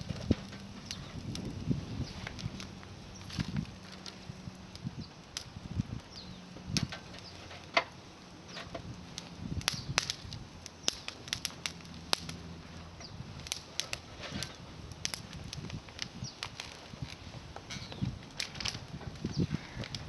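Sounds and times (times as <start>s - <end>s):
bonfire crackling: 0.0s - 20.0s.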